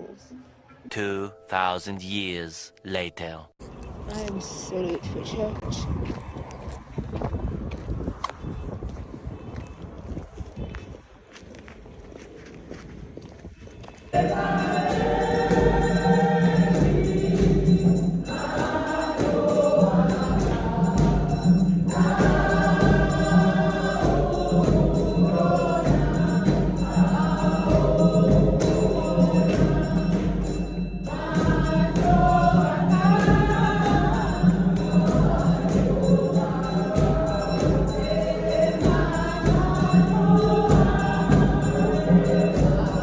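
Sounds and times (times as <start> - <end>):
choir singing: 14.2 - 43.0.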